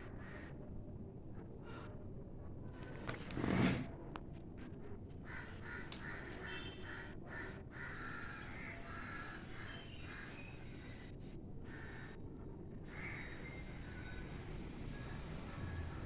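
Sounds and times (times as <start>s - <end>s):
crows cawing: 5.2s - 9.4s.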